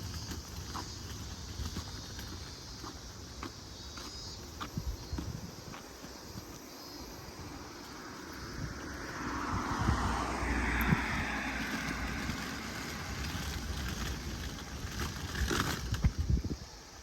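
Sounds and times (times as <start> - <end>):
vehicle passing by: 6.6 - 15.9
low rumble: 7.4 - 15.3.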